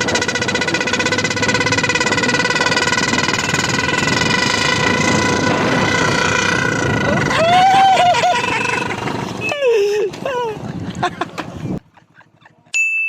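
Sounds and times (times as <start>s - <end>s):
blaring horn tone: 0.0s - 7.4s, 8.2s - 9.5s
motorcycle engine pulsing: 0.0s - 9.6s.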